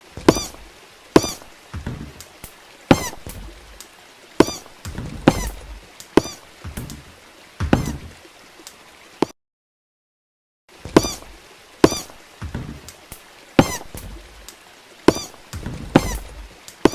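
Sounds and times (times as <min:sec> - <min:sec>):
heavy footsteps: 0:01.2 - 0:03.8, 0:04.4 - 0:08.2, 0:10.9 - 0:12.9, 0:15.1 - 0:16.9.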